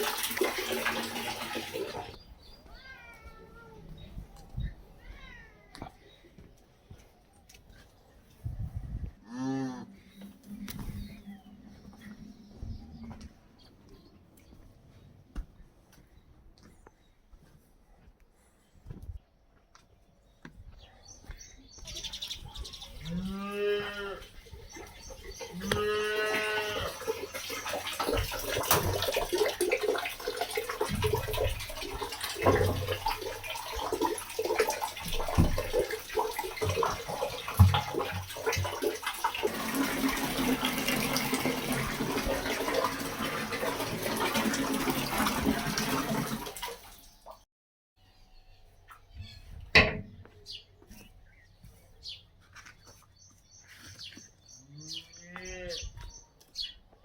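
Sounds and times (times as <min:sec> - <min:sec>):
cattle mooing: 0:23.0 - 0:24.2, 0:25.6 - 0:26.9.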